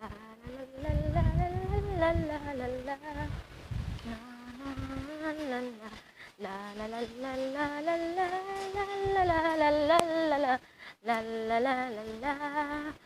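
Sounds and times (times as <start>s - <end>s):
faint click: 11.1s - 11.3s.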